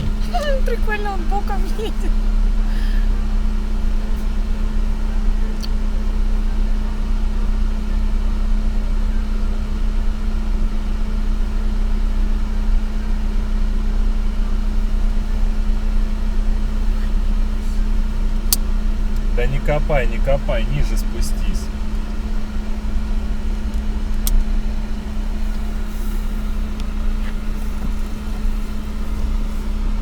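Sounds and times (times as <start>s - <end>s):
car engine running: 0.0s - 30.0s.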